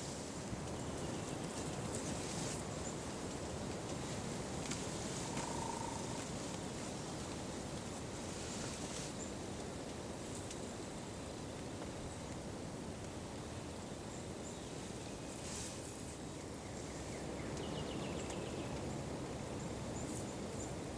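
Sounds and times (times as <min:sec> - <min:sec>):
low outdoor rush: 0:00.0 - 0:11.0
faint high bird chirps: 0:05.2 - 0:06.2.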